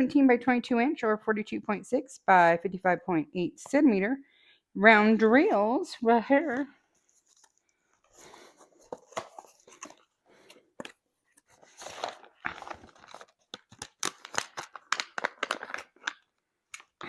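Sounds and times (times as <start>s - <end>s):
plastic and paper crinkling: 6.4s - 16.9s.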